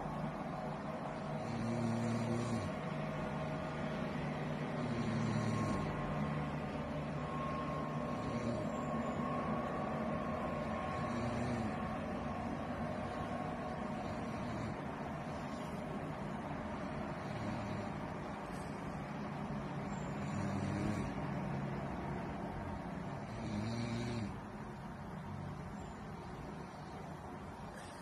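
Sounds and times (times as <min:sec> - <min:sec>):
steady background noise: 0:00.0 - 0:28.0
woman snoring: 0:01.4 - 0:02.8, 0:04.8 - 0:06.0, 0:08.1 - 0:08.8, 0:10.9 - 0:11.8, 0:14.0 - 0:15.7, 0:17.2 - 0:18.1, 0:20.2 - 0:21.2, 0:23.2 - 0:24.4.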